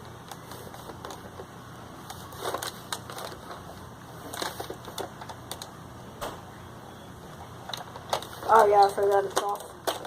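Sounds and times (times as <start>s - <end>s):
plastic toy blaster clicks and rattles: 7.7s - 10.0s.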